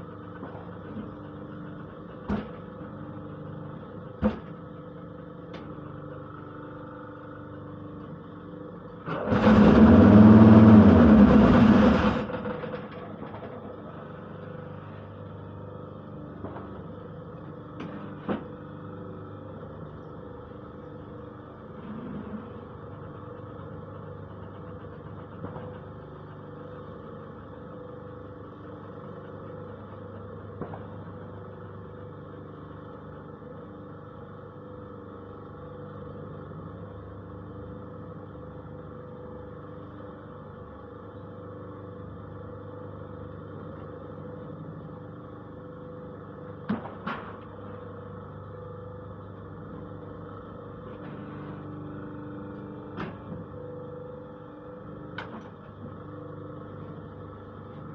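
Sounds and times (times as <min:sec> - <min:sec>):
press machine droning: 0:02.8 - 0:39.0.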